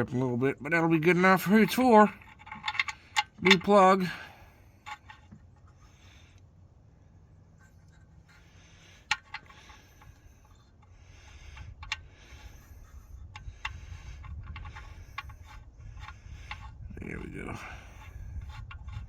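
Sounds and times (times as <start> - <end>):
metal clicks and taps: 2.2 - 3.8.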